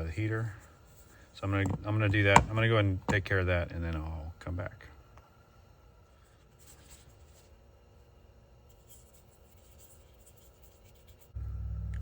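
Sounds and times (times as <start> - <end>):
scratchy rubbing: 8.7 - 11.4
loud low hum: 11.4 - 12.0.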